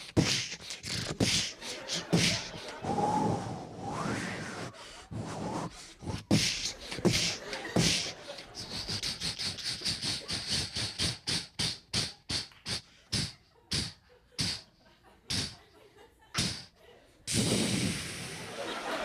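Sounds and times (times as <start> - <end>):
person imitating steam train chugging: 0.0 - 3.0, 5.1 - 14.7, 15.3 - 15.6.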